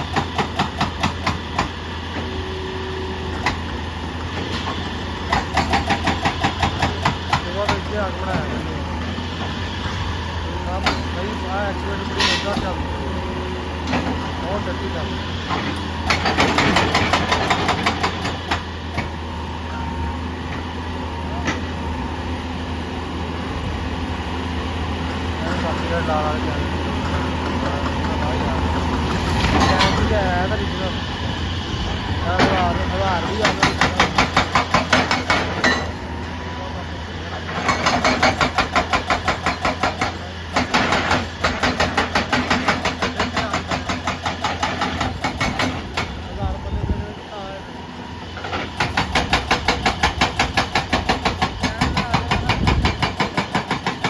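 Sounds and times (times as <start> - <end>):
diesel engine running: 0.0 - 54.0
sharp clattering knocks: 33.4 - 35.9, 37.6 - 46.2.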